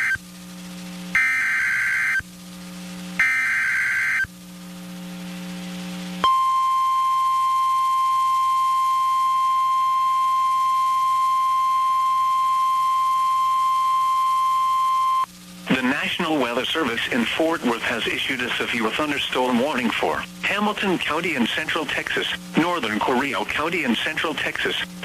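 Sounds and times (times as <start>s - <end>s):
steady warning alarm tone: 0.0s - 0.2s, 1.1s - 2.3s, 3.2s - 4.4s, 6.2s - 15.3s
digital data screech bursts: 1.2s - 2.2s, 3.2s - 4.3s.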